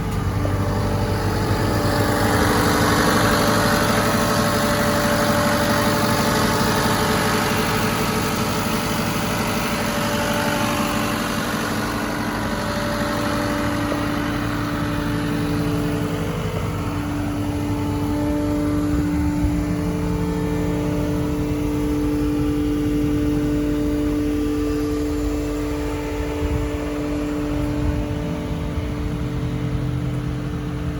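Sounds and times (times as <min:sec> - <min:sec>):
diesel engine running: 0:00.0 - 0:30.9.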